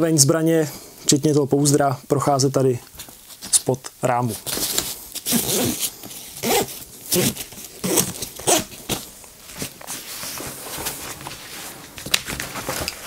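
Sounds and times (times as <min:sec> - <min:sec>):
backpack fabric rustling: 0:04.4 - 0:13.0.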